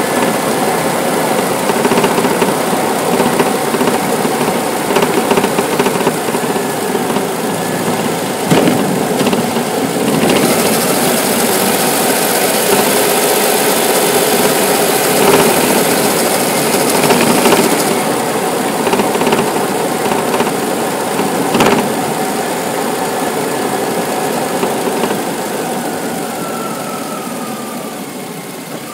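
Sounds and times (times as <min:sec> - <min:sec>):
car engine running: 0:00.0 - 0:28.9
hiss: 0:00.0 - 0:28.9
sharp knocks: 0:01.5 - 0:11.8, 0:14.2 - 0:18.1, 0:18.7 - 0:22.0, 0:24.5 - 0:25.3.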